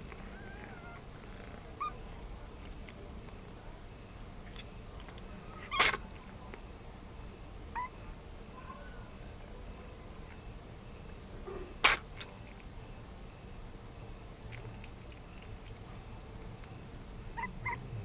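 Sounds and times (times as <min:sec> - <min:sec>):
cat chirping meows: 0:00.3 - 0:01.1, 0:07.8 - 0:08.0, 0:17.4 - 0:17.9.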